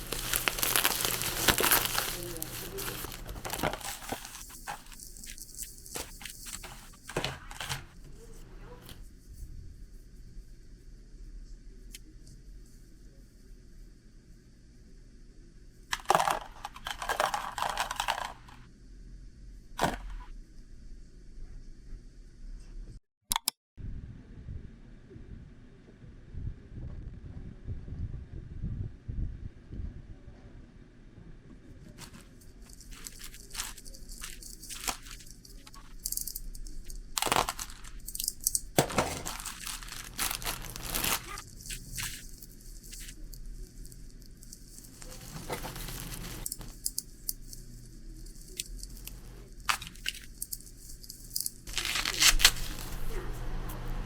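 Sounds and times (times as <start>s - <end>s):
packaging crinkling: 0.0s - 8.0s, 16.0s - 18.6s, 31.9s - 53.4s
packaging tearing: 0.0s - 8.0s, 32.0s - 43.2s, 44.3s - 47.0s, 51.3s - 53.2s
small objects clattering and rustling: 0.0s - 8.0s, 15.9s - 18.7s, 31.9s - 53.4s
sharp click: 23.3s - 23.6s.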